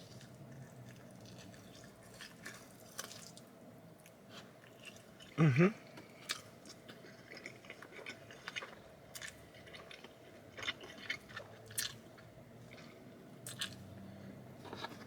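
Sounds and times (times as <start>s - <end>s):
person chewing pizza: 0.0s - 15.0s.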